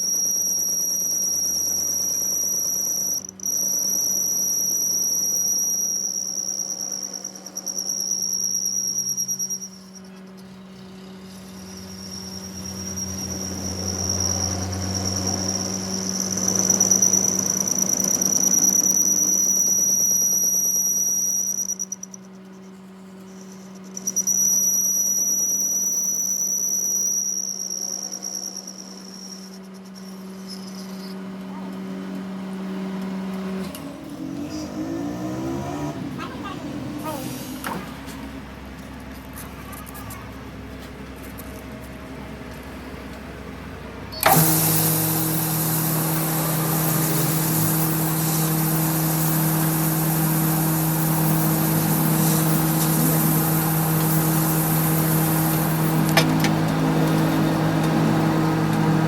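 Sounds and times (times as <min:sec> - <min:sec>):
high-pitched machine whine: 0:00.0 - 0:59.0
rough grinding noise: 0:44.3 - 0:59.0.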